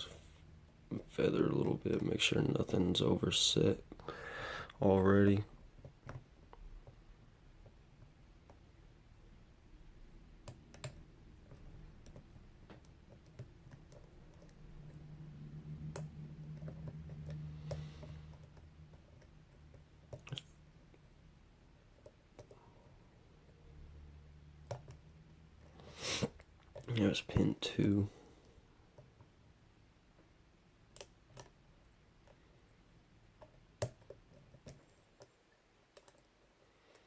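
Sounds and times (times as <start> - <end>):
low hum: 13.9 - 21.6.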